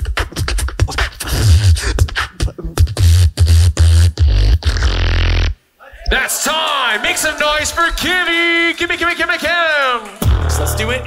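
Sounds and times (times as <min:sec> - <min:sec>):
beatboxing through a microphone: 0:00.0 - 0:06.2, 0:10.2 - 0:11.0.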